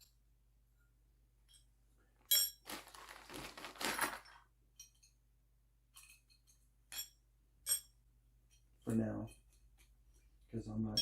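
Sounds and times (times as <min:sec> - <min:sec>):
fitting scraping and rustling: 0:02.6 - 0:04.4.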